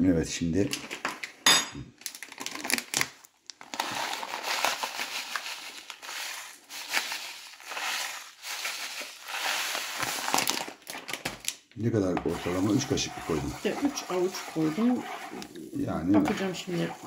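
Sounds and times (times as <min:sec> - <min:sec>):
coarse salt being scooped: 0:03.8 - 0:10.4, 0:12.2 - 0:17.0.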